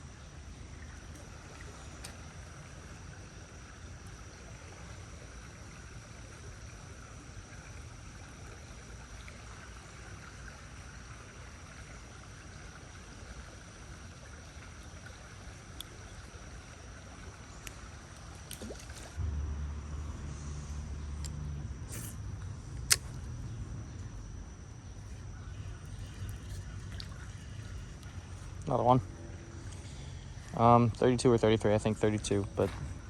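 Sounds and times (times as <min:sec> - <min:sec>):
creek water running: 0:00.0 - 0:33.0
loud low rumble: 0:19.2 - 0:24.2.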